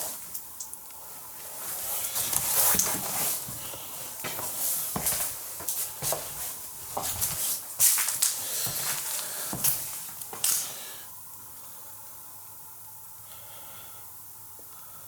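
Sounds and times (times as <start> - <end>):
rustling and crunching: 1.4 - 10.8.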